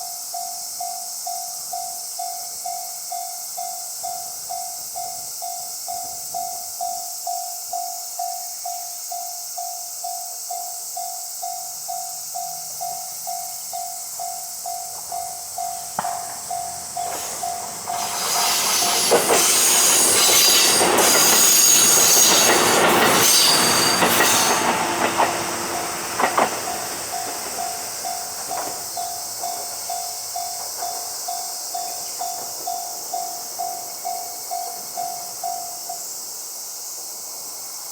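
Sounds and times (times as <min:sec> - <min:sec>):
railway crossing bell ringing: 0:00.0 - 0:36.1
train wheels clacking on rails: 0:12.0 - 0:36.0
train wheels squealing: 0:13.0 - 0:36.0.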